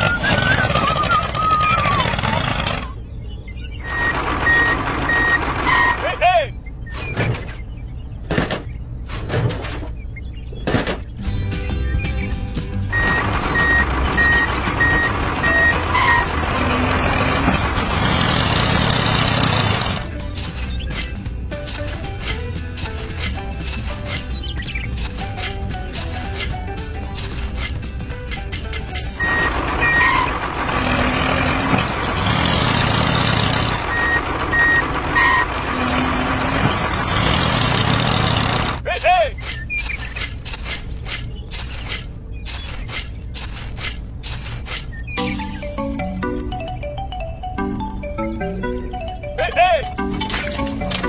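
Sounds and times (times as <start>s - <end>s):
engine running: 0.0s - 6.1s, 11.4s - 51.0s
vehicle reversing alarm beeping: 3.5s - 6.8s, 12.9s - 16.3s, 29.1s - 37.0s
noisy machine: 12.9s - 21.1s, 29.1s - 38.8s.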